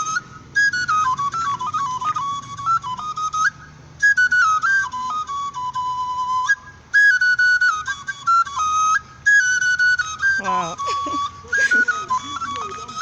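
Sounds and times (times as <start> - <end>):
wooden flute piping: 0.0 - 13.0.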